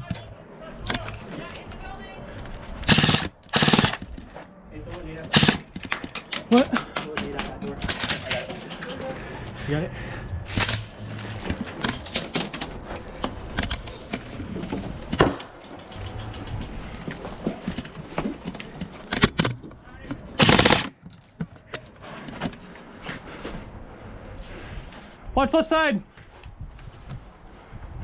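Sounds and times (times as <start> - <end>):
rapid full-auto airsoft burst: 2.8 - 4.2, 5.3 - 6.5, 20.4 - 20.9.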